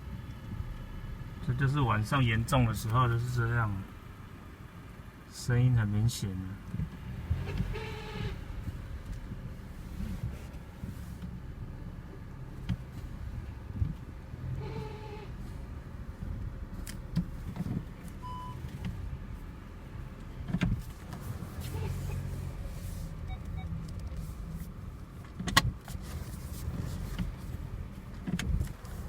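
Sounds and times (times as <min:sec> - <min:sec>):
car engine hum: 0:00.0 - 0:29.0
short beep: 0:18.2 - 0:18.6, 0:23.3 - 0:23.7
gearbox clunks and clicks: 0:20.3 - 0:21.2, 0:25.2 - 0:29.0.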